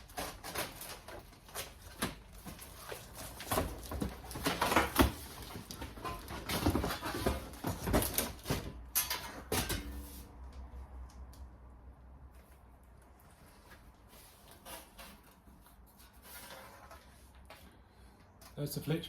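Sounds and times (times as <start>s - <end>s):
packaging rustling and scraping: 0.0s - 10.3s, 13.2s - 17.8s.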